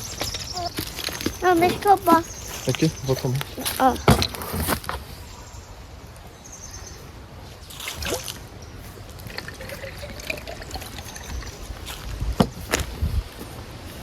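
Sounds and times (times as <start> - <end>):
water pouring into a cup: 9.2 - 12.0.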